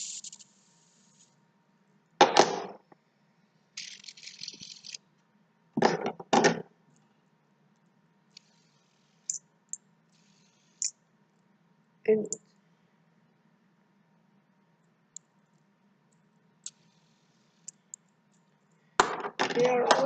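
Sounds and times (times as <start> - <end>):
fidget spinners clattering: 0.0 - 1.0, 3.8 - 5.0.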